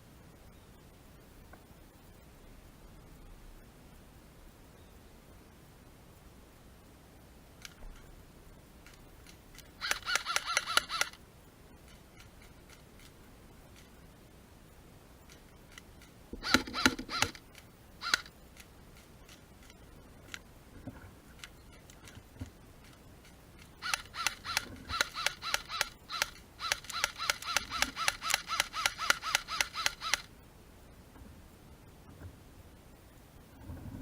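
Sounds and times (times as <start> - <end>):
airsoft gun firing: 9.8 - 11.2, 16.4 - 17.4, 23.8 - 30.3.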